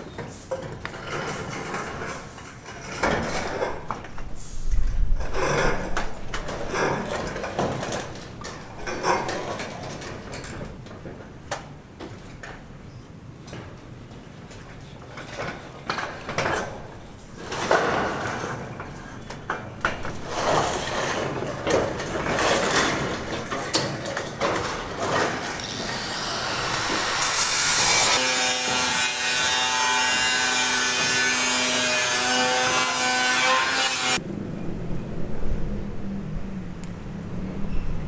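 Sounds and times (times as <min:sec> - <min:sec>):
power tool spinning: 0:24.6 - 0:30.0
rasping strokes: 0:24.8 - 0:31.5.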